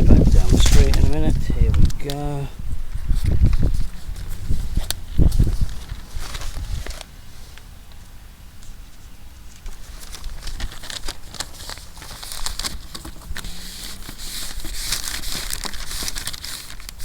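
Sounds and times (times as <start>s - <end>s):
wind rumble on microphone: 0.0s - 7.0s
newspaper rustling and crinkling: 0.0s - 7.6s, 9.5s - 17.0s.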